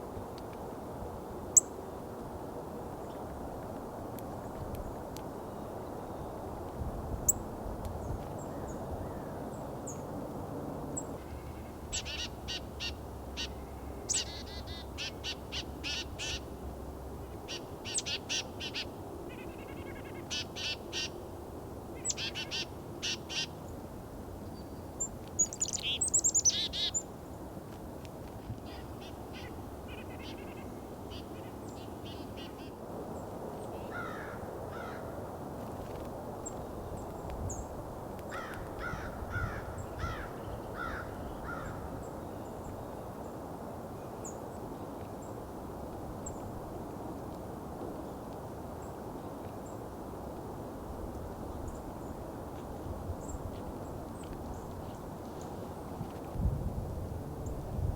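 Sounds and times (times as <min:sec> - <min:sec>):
low background noise: 0:00.0 - 0:57.9.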